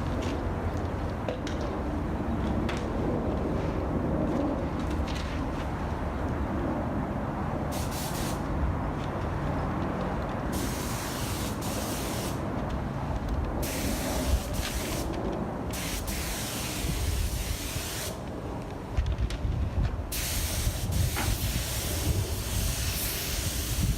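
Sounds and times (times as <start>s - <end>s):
spray gun hissing: 7.7s - 8.4s, 10.5s - 12.4s, 13.6s - 15.1s, 15.8s - 18.2s, 20.1s - 23.9s.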